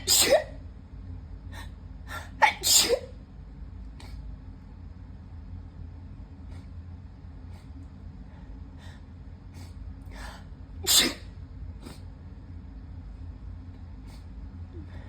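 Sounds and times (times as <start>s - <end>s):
loud sneeze: 0.0s - 0.6s, 2.4s - 3.1s, 10.9s - 12.0s.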